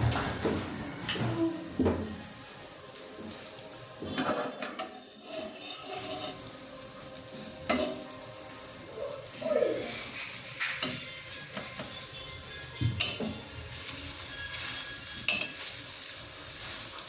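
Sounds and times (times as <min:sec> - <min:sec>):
utensil stirring and scraping pan: 0:04.7 - 0:08.3, 0:10.0 - 0:17.0.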